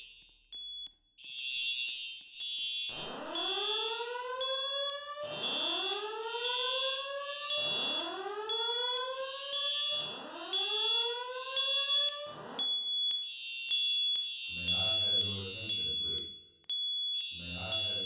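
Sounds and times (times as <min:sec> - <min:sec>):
fire alarm whoop tone: 0:00.0 - 0:18.0
spoken evacuation messages: 0:14.5 - 0:16.3, 0:17.4 - 0:18.0.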